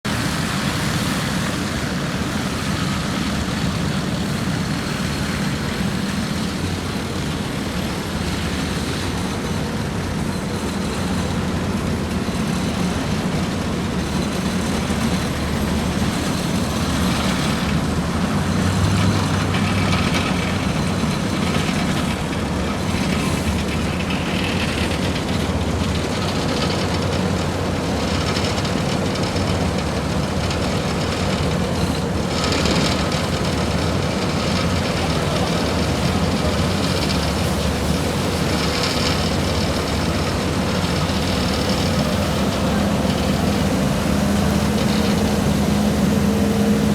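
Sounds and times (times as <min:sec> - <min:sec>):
heavy diesel engines droning: 0:00.0 - 0:46.9.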